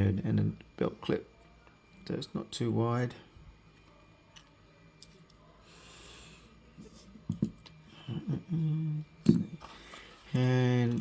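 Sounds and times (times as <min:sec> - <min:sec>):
man humming low: 0:08.0 - 0:09.1.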